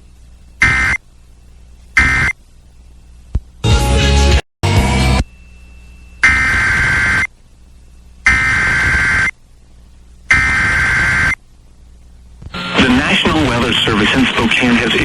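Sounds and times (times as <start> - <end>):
faint low hum: 0.0 - 3.6, 4.8 - 15.0
buzzy two-tone data bursts: 0.6 - 1.0, 2.0 - 2.4, 5.2 - 7.4, 8.2 - 9.4, 10.3 - 11.4.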